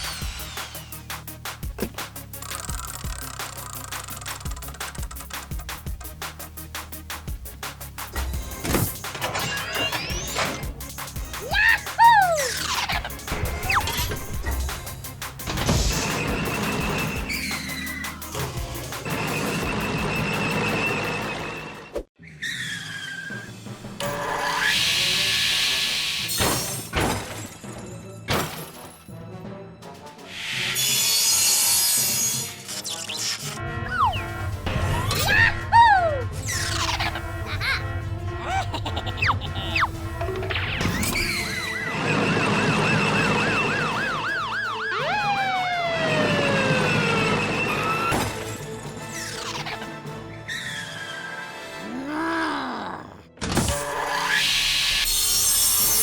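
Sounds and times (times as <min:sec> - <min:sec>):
background music: 0:00.0 - 0:22.0, 0:22.6 - 0:56.0
police siren yelping: 0:41.8 - 0:48.1
long falling siren tones: 0:42.6 - 0:47.9
cartoon hissing noise: 0:51.8 - 0:53.2.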